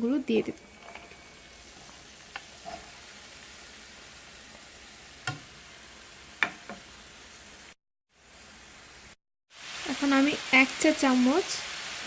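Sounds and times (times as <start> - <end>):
onions sizzling in a frying pan: 0.0 - 12.0
sharp knocks against pan: 5.2 - 5.5, 6.4 - 6.8.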